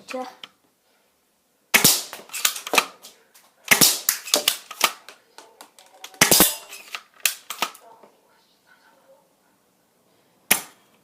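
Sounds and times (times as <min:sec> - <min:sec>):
toy gun firing snapping shots: 0:01.8 - 0:02.9, 0:03.7 - 0:05.1, 0:06.0 - 0:07.8.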